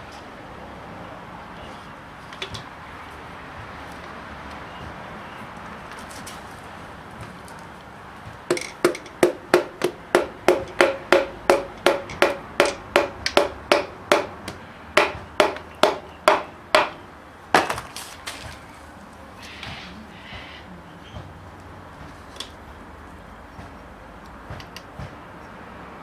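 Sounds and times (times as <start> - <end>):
hammer strikes ringing: 8.5 - 17.0.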